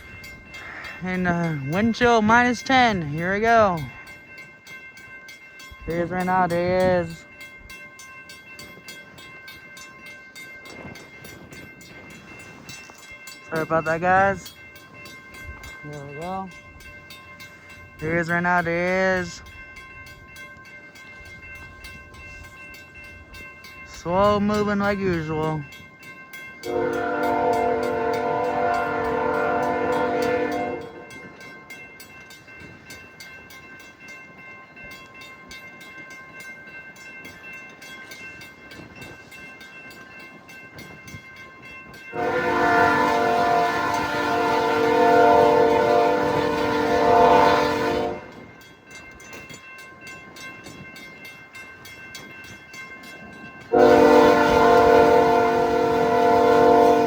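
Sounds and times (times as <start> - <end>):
train rumbling: 0.0 - 57.0
locomotive horn blasts: 26.7 - 31.1, 42.2 - 48.4, 53.7 - 57.0.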